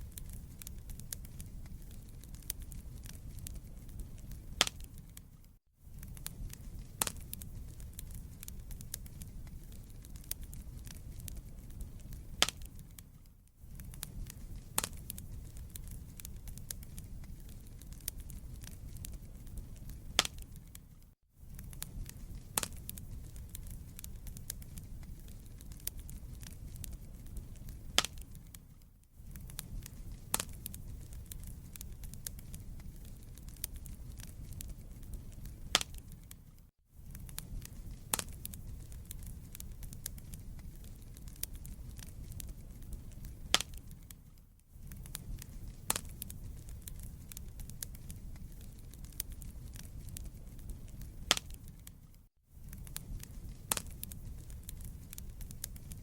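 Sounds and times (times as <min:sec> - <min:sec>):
fire flames rumbling: 0:00.0 - 0:56.0
wood crackling and popping: 0:00.0 - 0:56.0.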